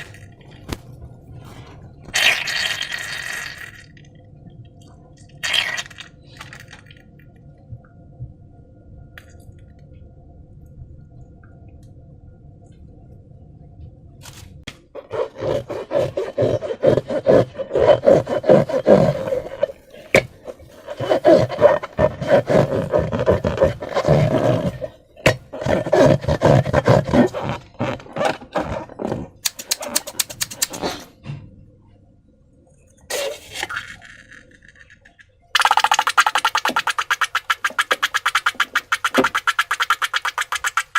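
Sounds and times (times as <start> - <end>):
faint steady hum: 0.0 - 40.9
slime squelching by hand: 15.0 - 31.1, 35.6 - 40.9.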